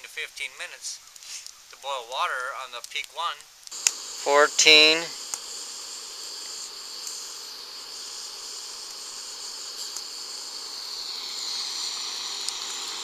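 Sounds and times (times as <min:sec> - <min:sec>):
pot of water boiling: 0:03.6 - 0:13.0
crickets chirping: 0:03.7 - 0:13.0.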